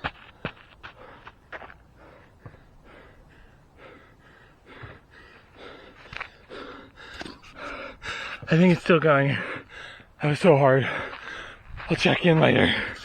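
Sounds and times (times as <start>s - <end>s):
person breathing hard and gasping: 0.9s - 8.5s.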